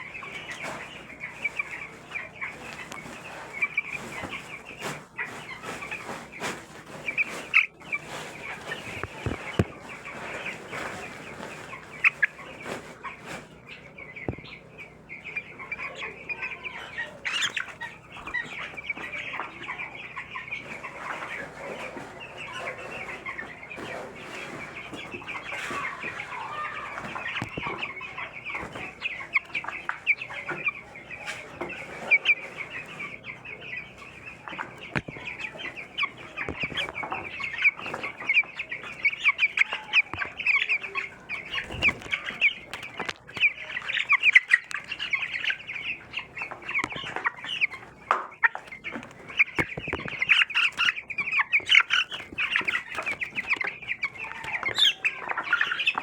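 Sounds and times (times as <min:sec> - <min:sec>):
chicks peeping: 0:00.0 - 0:56.0.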